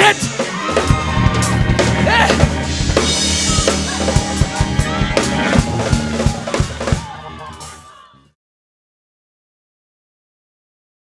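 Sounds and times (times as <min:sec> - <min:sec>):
drum kit beat: 0:00.0 - 0:08.1
gospel band music: 0:00.0 - 0:08.1.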